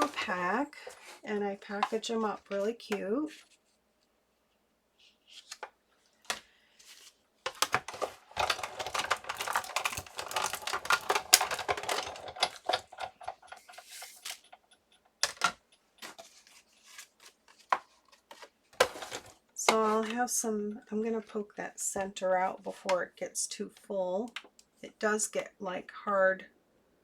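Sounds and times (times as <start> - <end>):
paper clicks and rustles: 5.0 - 20.1.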